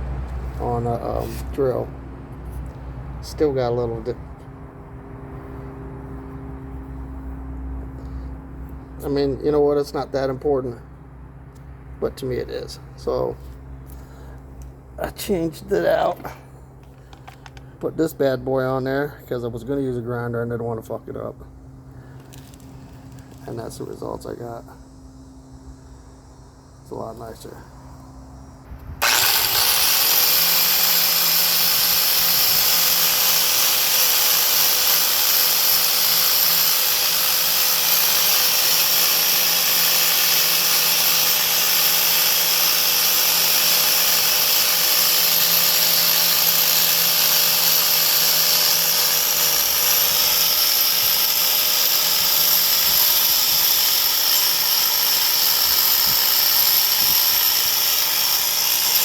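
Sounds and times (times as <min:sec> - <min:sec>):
wire wheel grinder whining: 0:28.8 - 0:59.0.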